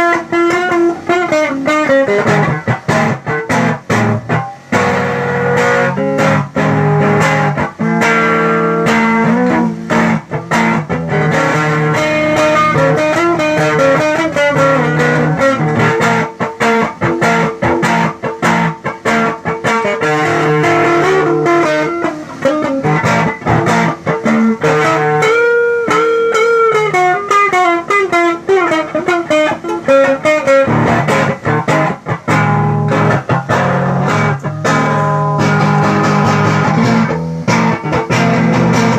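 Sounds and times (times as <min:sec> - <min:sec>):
electric guitar picking notes: 0:00.0 - 0:38.9.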